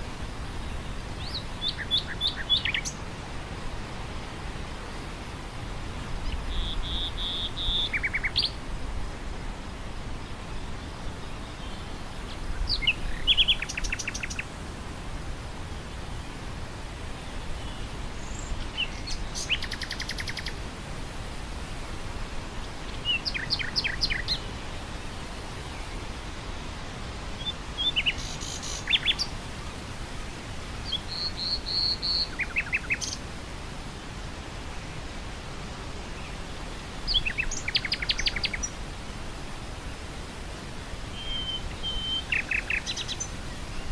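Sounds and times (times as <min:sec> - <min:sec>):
wind through grass: 0:00.0 - 0:43.9
nightingale singing: 0:00.7 - 0:03.0, 0:06.2 - 0:08.6, 0:12.6 - 0:14.5, 0:17.7 - 0:20.6, 0:23.0 - 0:24.5, 0:27.4 - 0:29.3, 0:30.8 - 0:33.2, 0:37.1 - 0:38.8, 0:41.1 - 0:43.9.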